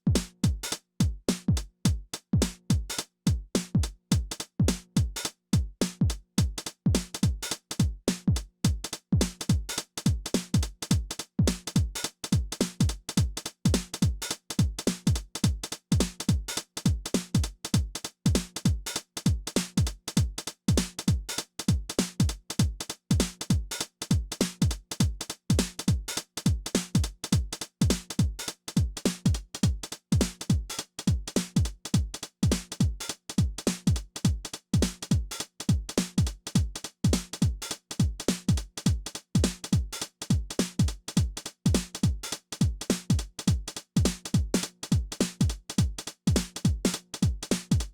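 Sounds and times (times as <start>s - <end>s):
deep kick drum: 0.0s - 47.9s
drum machine electronic beat: 0.0s - 47.9s
hi-hat and cymbal hits: 0.0s - 47.9s.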